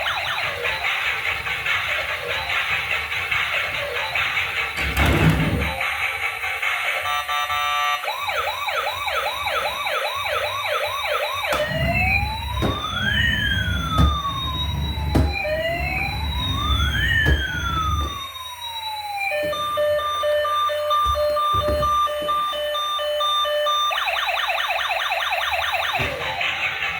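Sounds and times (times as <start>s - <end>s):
toy electronic siren: 0.0s - 6.0s, 6.8s - 26.8s
knocks: 11.5s - 18.2s, 21.0s - 22.1s.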